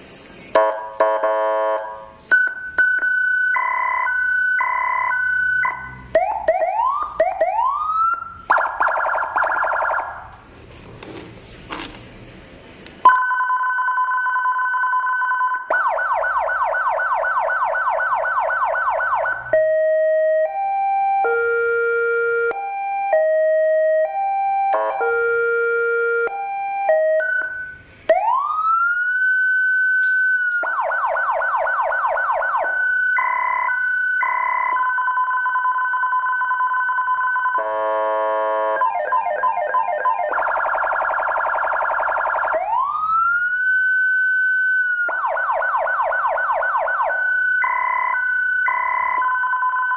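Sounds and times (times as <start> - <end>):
motorcycle siren: 0.6 - 10.4, 13.1 - 49.9
handling noise: 10.5 - 12.9.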